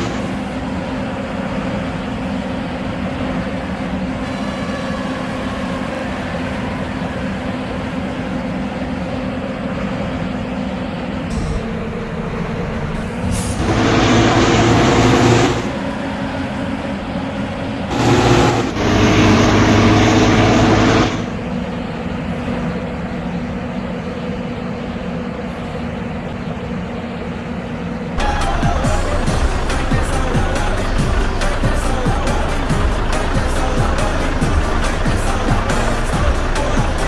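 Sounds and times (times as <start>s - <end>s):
multi-tone air horn blasts: 0.0s - 10.0s, 11.3s - 21.5s, 28.2s - 37.0s
bus engine running: 0.0s - 37.0s
traffic: 0.0s - 37.0s.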